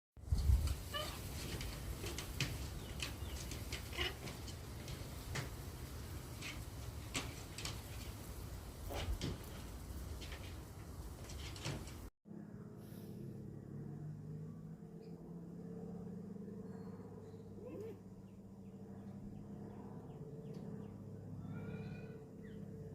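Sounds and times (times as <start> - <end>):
birds chirping: 0.8 - 12.0, 16.4 - 22.9.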